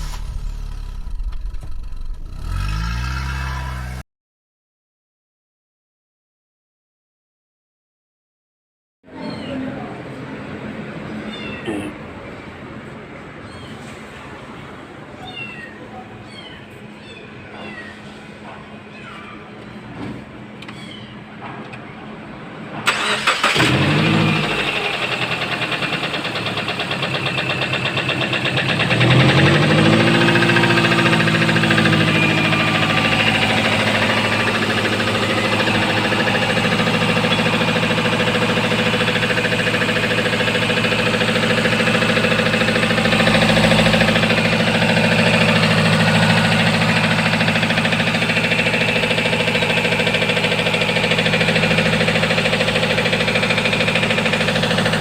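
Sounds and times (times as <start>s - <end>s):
car engine starting: 0.0s - 4.0s, 22.8s - 55.0s
engine idling with knock: 0.0s - 4.0s, 24.0s - 55.0s.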